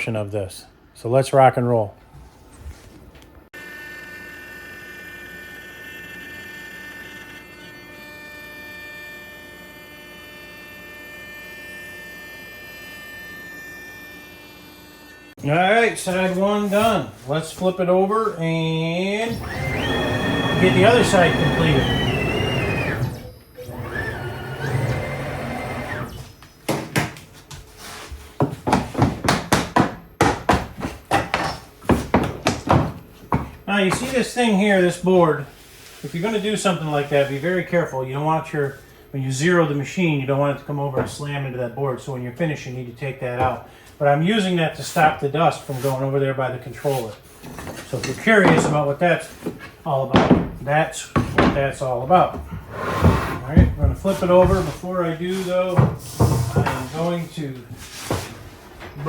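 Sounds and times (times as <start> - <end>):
router spindle high-pitched whine: 3.6 - 15.3, 19.3 - 26.2
sharp wooden knocks: 50.1 - 50.6.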